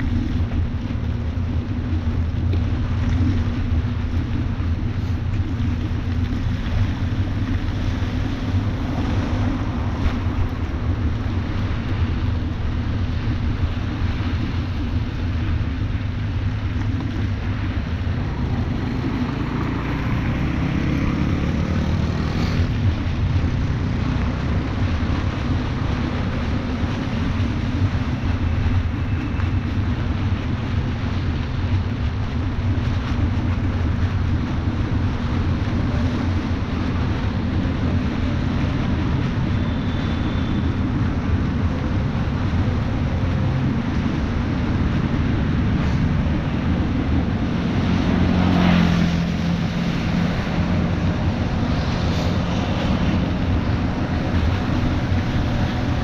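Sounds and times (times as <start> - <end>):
steady rain: 0.0 - 56.0
wind on microphone: 0.0 - 56.0
hiss of wet road: 4.3 - 23.2, 24.0 - 56.0
motor vehicle passing: 16.0 - 25.4, 41.4 - 56.0.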